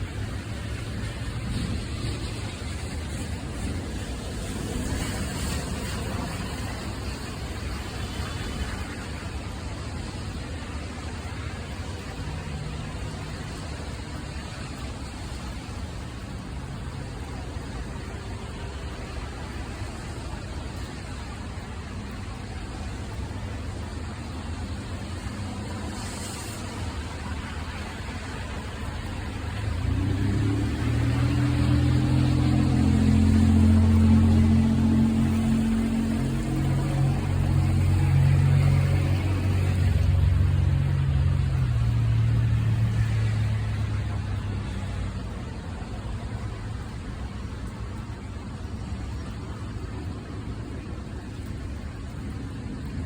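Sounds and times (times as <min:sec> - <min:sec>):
rolling thunder rumble: 0:00.0 - 0:09.0
steady rainfall: 0:00.0 - 0:53.0.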